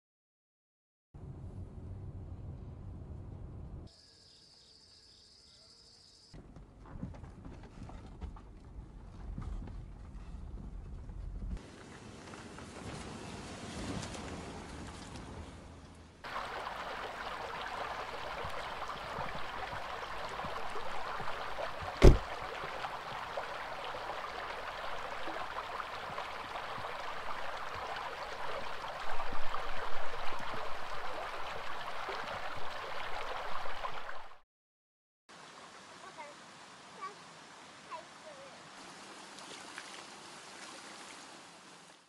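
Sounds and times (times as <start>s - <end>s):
stream flowing over rocks: 16.2s - 34.4s, 35.3s - 42.0s
sharp thump: 22.0s - 22.2s.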